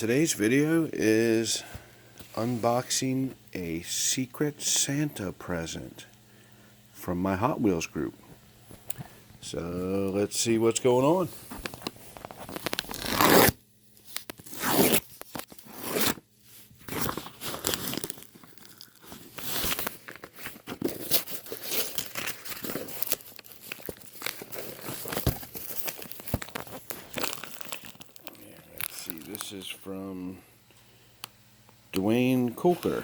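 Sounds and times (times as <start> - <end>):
wrapping rustling: 11.3 - 29.8
package ripping open: 11.7 - 16.2, 16.8 - 29.7.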